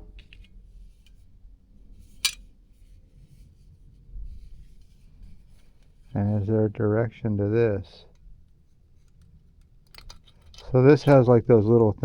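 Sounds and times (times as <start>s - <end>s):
small plastic parts clicking: 9.0s - 11.2s.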